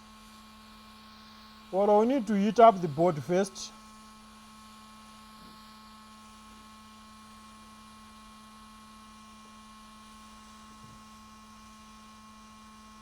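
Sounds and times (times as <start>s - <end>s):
faint electrical hum: 0.0s - 13.0s.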